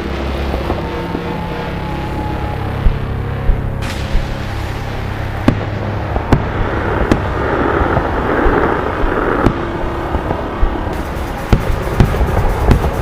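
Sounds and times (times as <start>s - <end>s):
firework bangs: 0.0s - 13.0s
rushing swell: 0.0s - 13.0s
rapid firework crackling: 2.7s - 13.0s.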